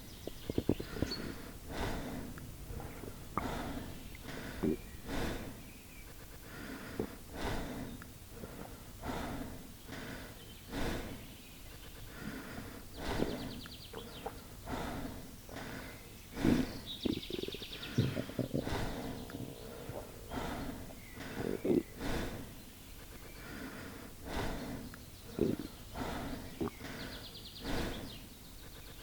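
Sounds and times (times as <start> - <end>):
stomach growling and gurgling: 0.2 - 5.0, 17.0 - 22.0.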